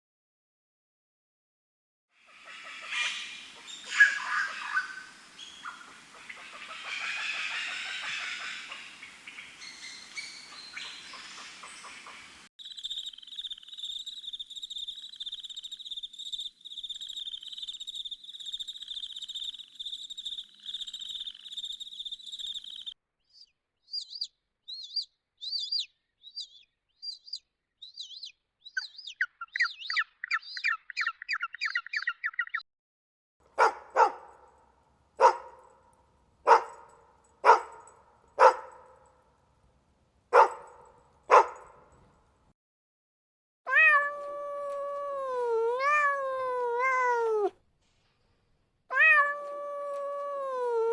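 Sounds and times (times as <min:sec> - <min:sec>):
bird chirping rapidly: 0:02.3 - 0:32.6, 0:33.6 - 0:34.4, 0:35.2 - 0:35.6, 0:36.5 - 0:38.8, 0:40.3 - 0:41.7
bird chirps and fast trills: 0:12.6 - 0:32.6, 0:40.4 - 0:40.7, 0:41.3 - 0:41.6
dog barking: 0:33.5 - 0:34.6, 0:35.2 - 0:35.8, 0:36.4 - 0:39.1, 0:40.3 - 0:42.1.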